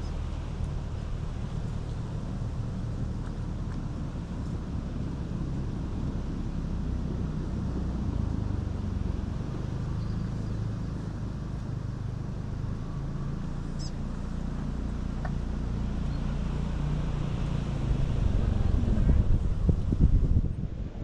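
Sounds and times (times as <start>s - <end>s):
engine rumbling: 0.0s - 21.0s
wind noise on microphone: 17.4s - 21.0s.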